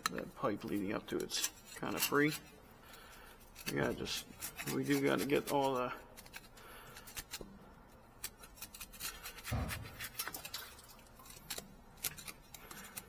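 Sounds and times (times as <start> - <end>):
metal tools clicking and scraping: 0.0 - 7.5, 8.1 - 13.0
low thump: 9.5 - 10.2.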